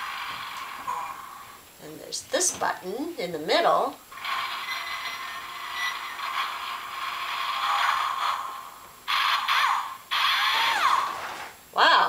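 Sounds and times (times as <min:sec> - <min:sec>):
electronic toy drill buzzing: 0:04.2 - 0:08.4.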